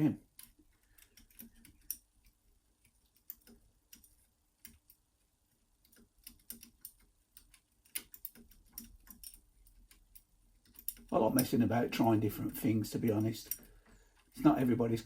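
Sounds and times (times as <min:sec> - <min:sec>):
lock picking metallic clicks: 0:05.8 - 0:11.6.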